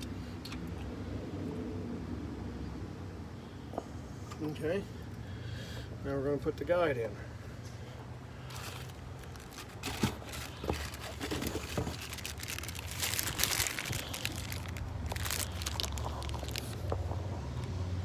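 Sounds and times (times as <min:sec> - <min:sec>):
plastic packaging crinkling: 0:08.5 - 0:17.1.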